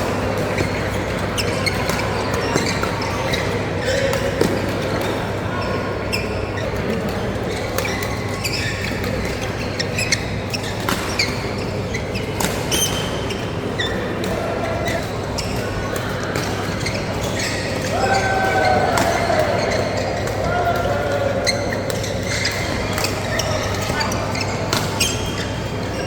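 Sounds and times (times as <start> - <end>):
sports hall noise: 0.0 - 26.0
shoe squeaks on court floor: 0.3 - 4.0, 7.6 - 14.0, 14.8 - 20.5, 21.5 - 26.0
racket hitting shuttlecock: 17.8 - 21.0.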